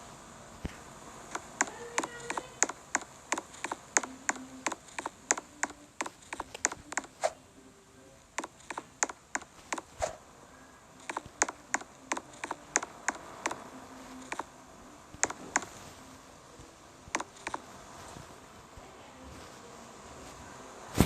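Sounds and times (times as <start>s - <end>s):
hand tools clicking and tapping: 1.3s - 7.1s, 8.4s - 9.9s, 11.0s - 13.6s, 14.2s - 14.5s.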